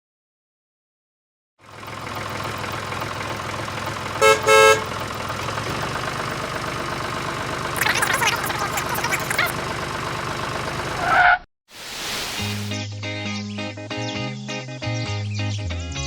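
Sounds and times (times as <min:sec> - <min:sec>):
mini tractor motor running: 0:01.6 - 0:11.1.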